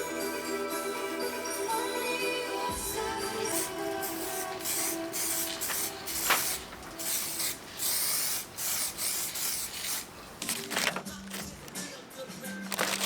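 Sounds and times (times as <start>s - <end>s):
sandpaper scratching strokes: 3.5s - 10.7s.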